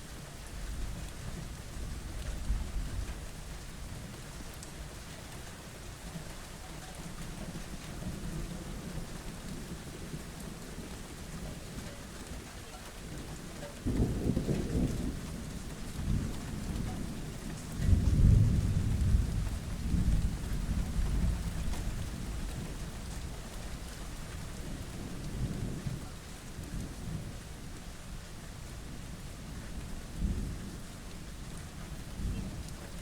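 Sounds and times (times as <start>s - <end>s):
steady rain: 0.0s - 33.0s
rolling thunder: 13.9s - 22.8s.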